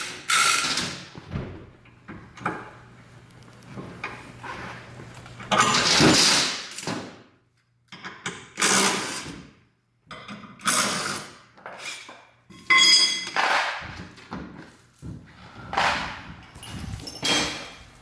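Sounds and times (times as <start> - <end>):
metal tools clanking: 15.8 - 18.0.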